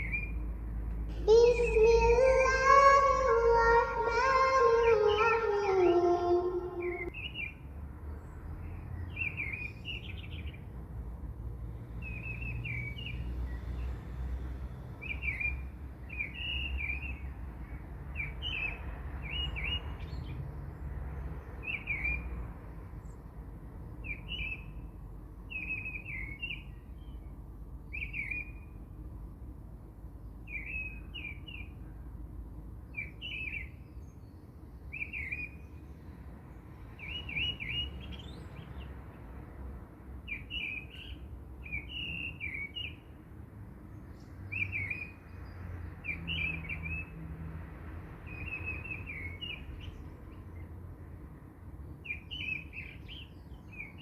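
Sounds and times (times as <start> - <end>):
bird chirping: 1.2 - 7.6.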